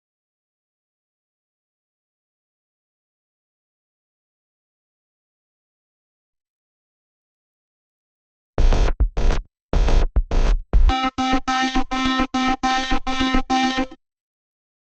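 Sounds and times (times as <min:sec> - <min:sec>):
buzzy electronic beeps: 0:10.9 - 0:14.0.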